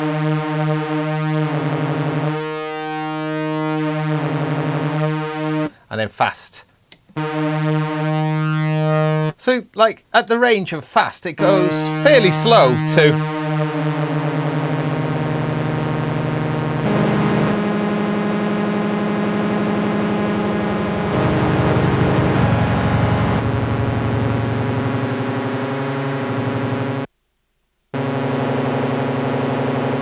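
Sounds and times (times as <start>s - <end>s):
flanged synthesizer notes: 7.2s - 9.3s, 11.4s - 26.1s.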